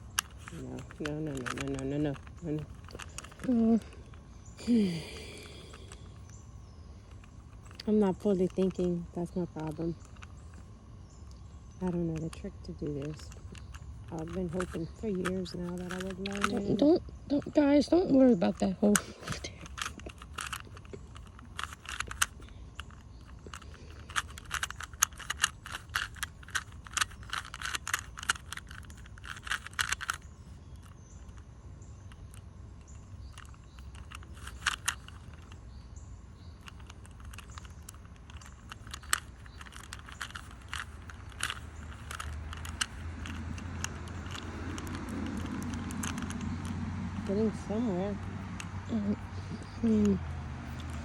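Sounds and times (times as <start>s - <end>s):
puzzle cube clicking: 0.0s - 35.7s, 36.6s - 51.0s.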